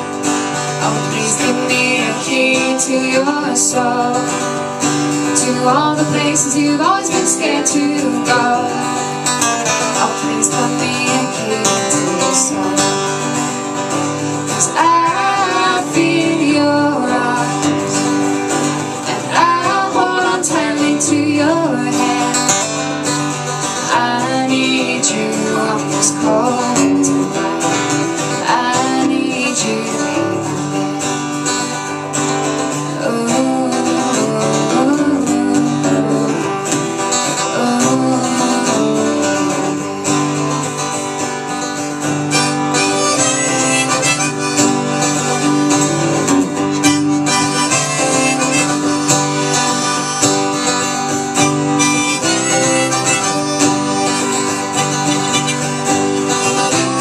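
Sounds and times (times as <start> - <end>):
acoustic guitar accompaniment: 0.0 - 57.0
held-note lead melody: 42.2 - 57.0.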